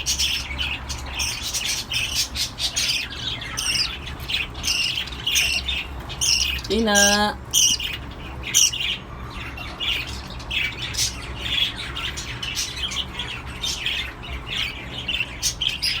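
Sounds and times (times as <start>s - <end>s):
cockatiels squawking: 0.0s - 16.0s.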